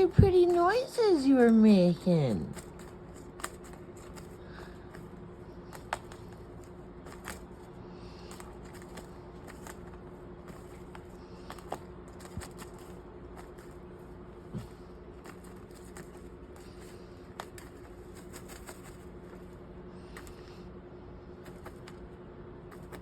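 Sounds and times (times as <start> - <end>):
steady low hum: 0.0 - 23.0
bird clicking: 2.5 - 6.4.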